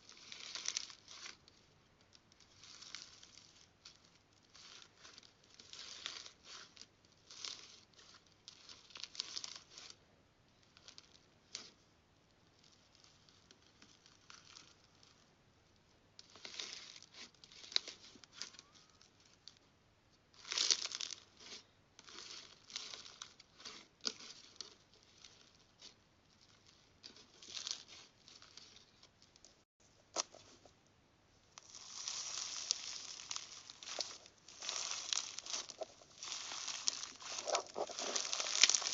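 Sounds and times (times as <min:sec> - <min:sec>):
slime crackling and popping: 0:00.0 - 0:10.0, 0:12.5 - 0:15.2, 0:20.3 - 0:30.6, 0:31.5 - 0:38.9.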